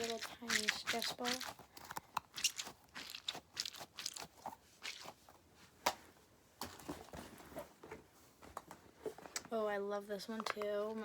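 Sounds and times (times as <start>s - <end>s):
fidget toys rustling and crinkling: 0.0s - 5.4s.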